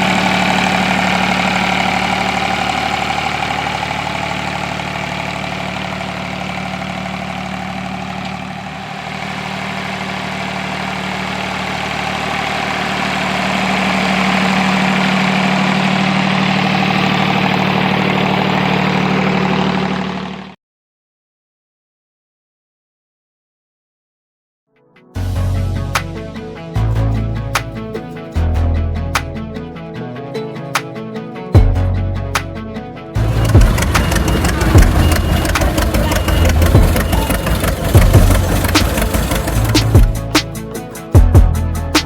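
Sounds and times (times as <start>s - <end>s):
tractor engine running: 0.0s - 20.6s, 31.6s - 42.0s.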